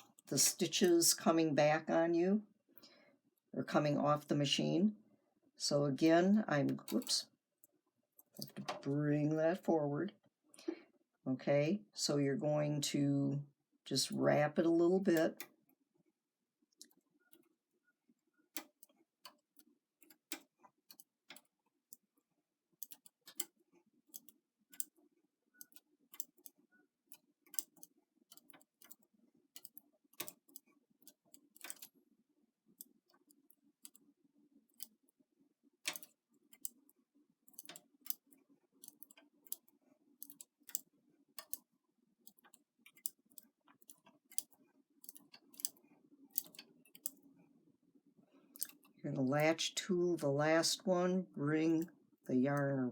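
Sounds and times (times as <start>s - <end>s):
latch tool clicking on needles: 25.6s - 29.0s, 29.6s - 31.9s, 35.8s - 36.8s, 42.3s - 47.2s.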